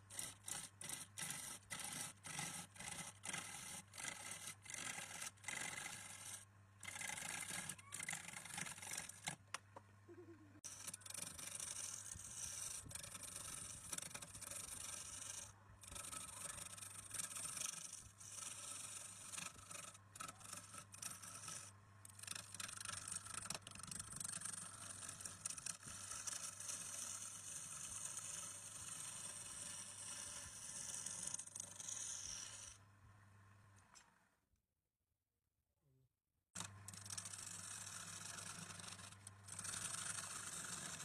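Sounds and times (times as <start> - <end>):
tool scraping on wood: 0.0 - 9.4, 10.6 - 32.8, 36.6 - 41.0.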